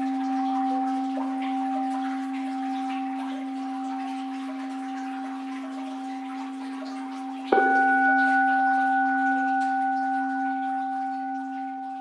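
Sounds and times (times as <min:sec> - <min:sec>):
soft water wash: 0:00.0 - 0:12.0
standing bell ringing: 0:07.5 - 0:12.0.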